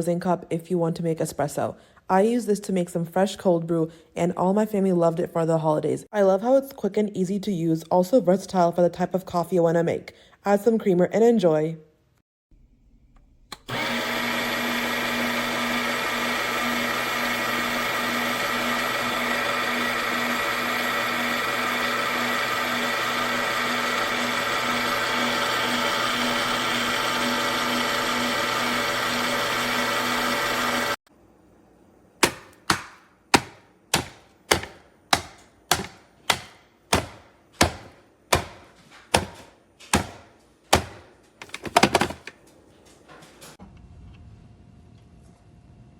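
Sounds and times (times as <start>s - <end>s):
coffee grinder humming: 13.5s - 31.0s, 39.9s - 42.3s
sharp knocks: 32.2s - 42.3s.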